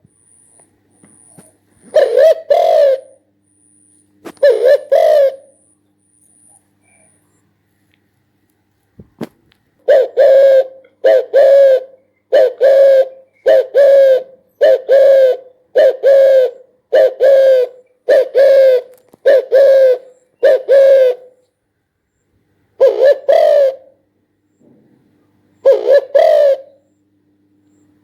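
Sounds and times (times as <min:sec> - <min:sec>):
dove cooing: 0:01.1 - 0:03.3, 0:04.2 - 0:05.8, 0:09.8 - 0:21.5, 0:22.8 - 0:24.1, 0:25.6 - 0:27.0.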